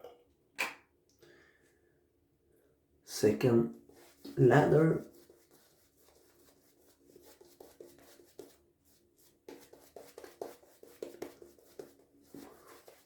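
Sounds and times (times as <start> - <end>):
shaving brush wet brushing strokes: 3.9 - 13.0.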